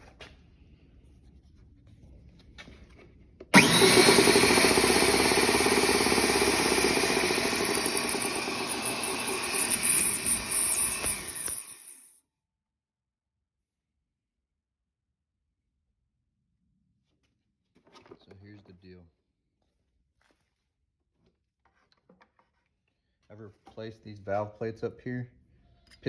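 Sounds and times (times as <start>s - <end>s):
air compressor chugging and hissing: 3.6s - 12.1s.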